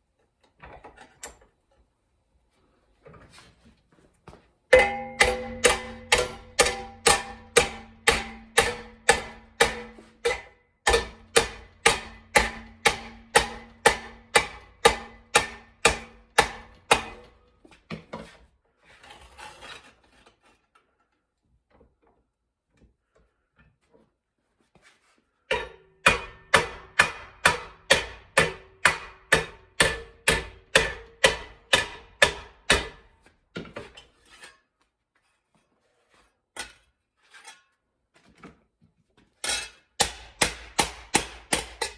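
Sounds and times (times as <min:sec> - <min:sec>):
faint handling and scraping: 0:00.3 - 0:04.6, 0:17.6 - 0:25.5, 0:33.7 - 0:39.4
hammer on sheet steel: 0:04.7 - 0:17.4, 0:25.5 - 0:33.1, 0:40.0 - 0:41.9.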